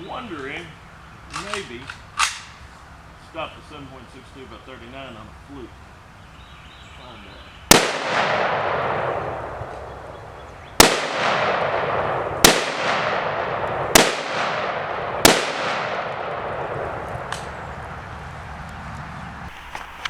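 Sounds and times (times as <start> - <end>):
rifle shots with echo: 7.7 - 17.6.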